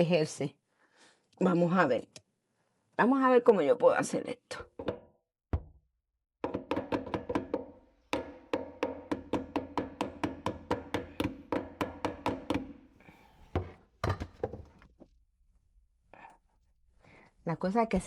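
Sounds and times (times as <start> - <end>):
small hammer tapping on metal: 6.4 - 12.7.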